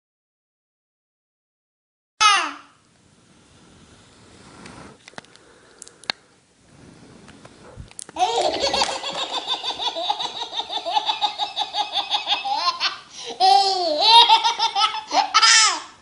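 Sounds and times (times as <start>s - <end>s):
high-pitched laughter: 8.2s - 15.9s.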